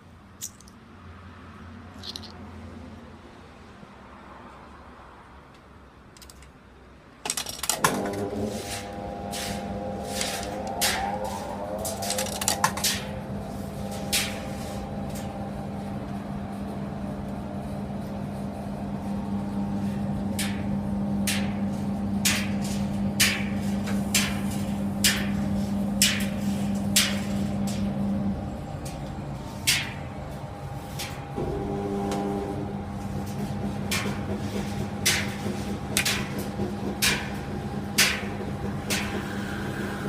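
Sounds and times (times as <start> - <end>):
tumble dryer motor humming: 7.8 - 40.0
tumbling load knocking: 33.0 - 40.0.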